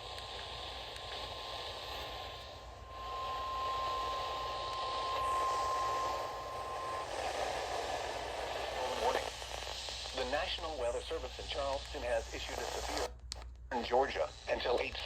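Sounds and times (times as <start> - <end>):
radio static hiss: 0.0 - 15.0
steady alarm tone: 2.5 - 9.0.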